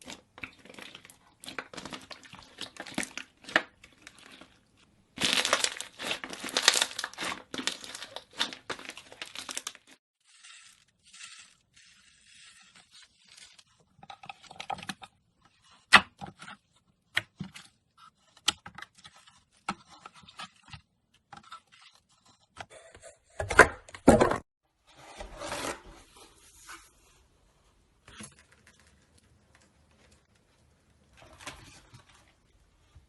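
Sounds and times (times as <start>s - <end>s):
slime rubbing and squishing: 0.1s - 13.8s.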